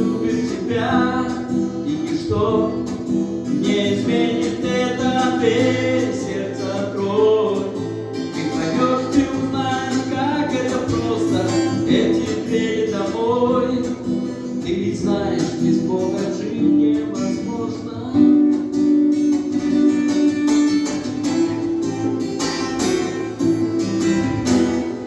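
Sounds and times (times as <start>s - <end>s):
person singing: 0.0s - 18.8s
strummed acoustic guitar: 0.0s - 25.0s.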